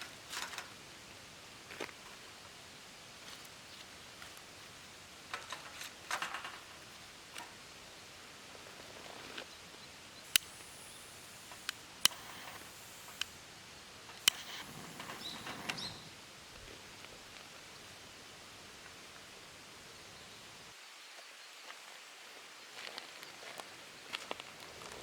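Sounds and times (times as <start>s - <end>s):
faint background hiss: 0.0s - 25.0s
soft rustling: 3.2s - 6.0s
sharp clicks: 10.2s - 13.4s, 14.1s - 16.1s.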